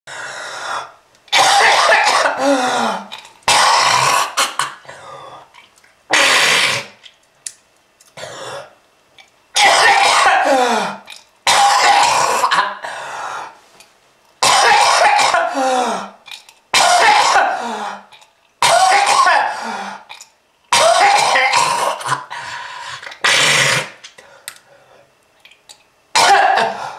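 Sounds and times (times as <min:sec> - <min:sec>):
person coughing hard: 0:01.3 - 0:05.1, 0:06.1 - 0:07.0, 0:09.6 - 0:12.9, 0:14.4 - 0:19.8, 0:20.7 - 0:22.3, 0:23.2 - 0:24.0, 0:26.1 - 0:26.9.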